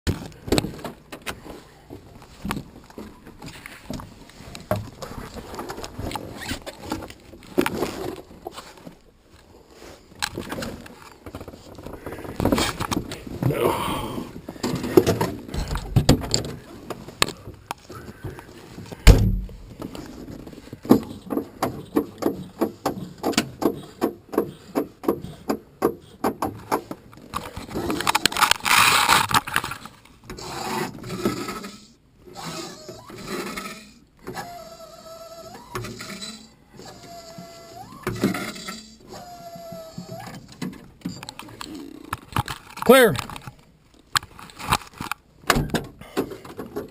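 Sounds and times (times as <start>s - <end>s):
mechanical cockpit clicks and knocks: 20.8s - 28.5s.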